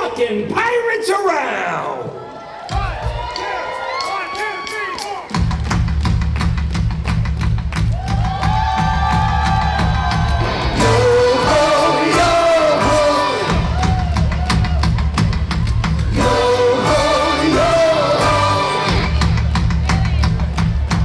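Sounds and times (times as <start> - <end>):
upbeat rock music with singing: 7.7 - 21.0.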